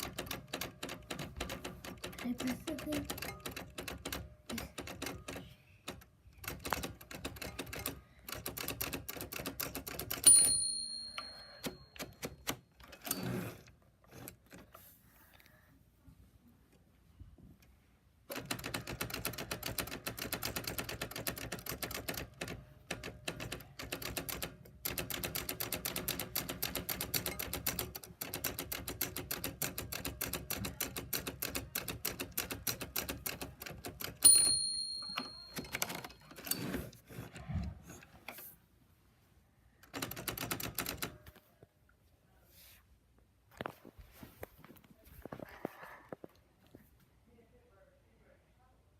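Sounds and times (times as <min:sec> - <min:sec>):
typewriter typing: 0:00.0 - 0:10.3, 0:18.3 - 0:36.9, 0:39.8 - 0:41.2
typewriter bell ringing: 0:10.0 - 0:12.5, 0:34.2 - 0:36.7.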